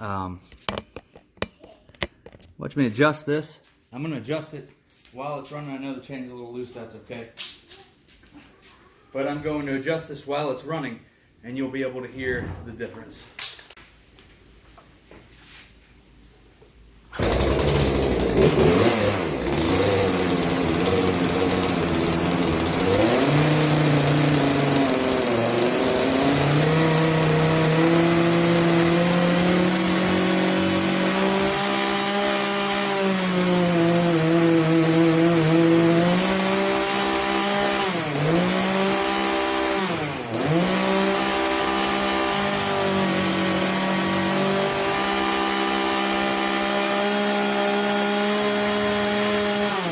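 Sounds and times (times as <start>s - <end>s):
chainsaw engine at high throttle: 17.2s - 49.9s.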